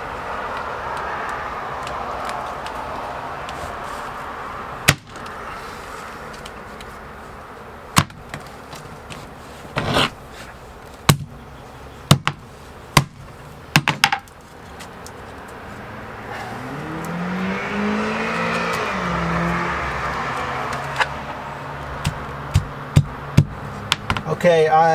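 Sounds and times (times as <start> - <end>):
sledgehammer striking paper: 8.0 - 8.5, 12.1 - 14.2, 22.0 - 24.3
vehicle engine revving: 15.5 - 23.9.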